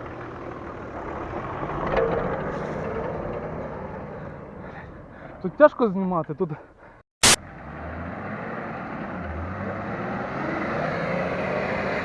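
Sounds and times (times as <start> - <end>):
car engine revving under load: 7.3 - 12.0.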